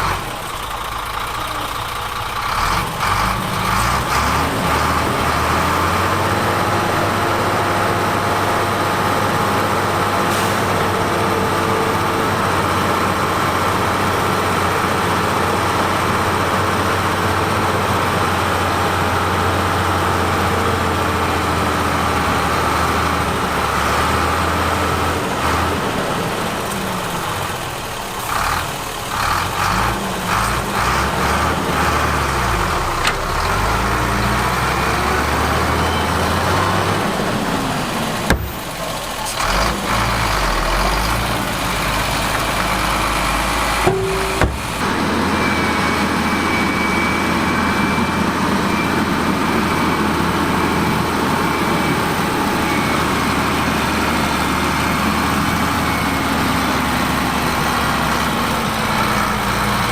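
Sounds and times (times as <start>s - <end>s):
heavy diesel engine running: 0.0s - 59.9s
sharp knock: 38.3s - 38.6s, 43.9s - 44.8s.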